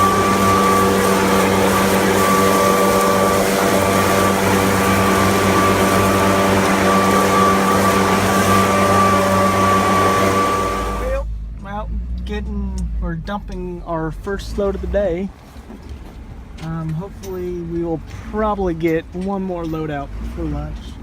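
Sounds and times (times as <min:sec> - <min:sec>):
high whine: 0:00.0 - 0:11.2
machine engine running: 0:00.0 - 0:11.2.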